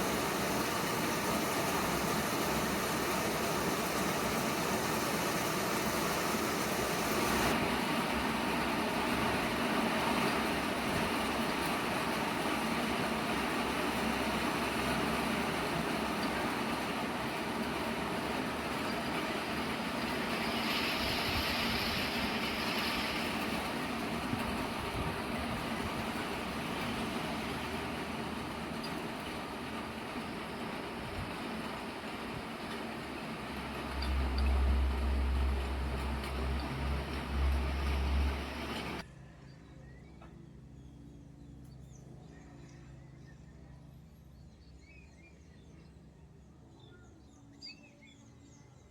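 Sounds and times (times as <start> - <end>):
heavy rain in strong wind: 0.0 - 39.0
wind rumbling on microphone: 20.6 - 27.3
faint bird chirps: 39.1 - 48.9.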